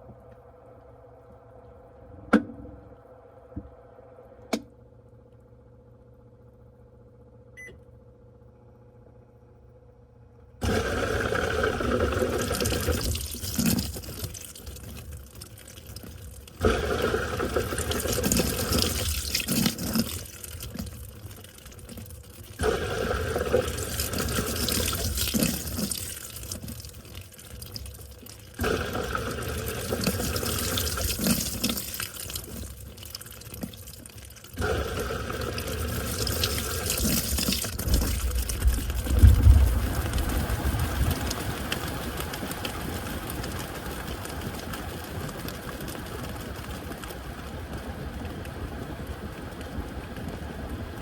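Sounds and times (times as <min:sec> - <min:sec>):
washing machine running: 0:00.0 - 0:51.0
low rumble: 0:37.8 - 0:41.8.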